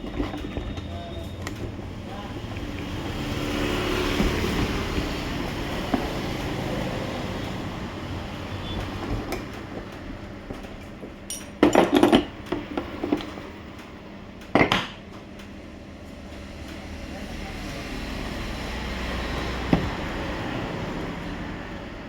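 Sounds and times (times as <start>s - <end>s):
metal objects knocking and clinking: 0.0s - 6.7s, 8.7s - 13.4s, 14.5s - 15.0s
steady background noise: 0.0s - 22.0s.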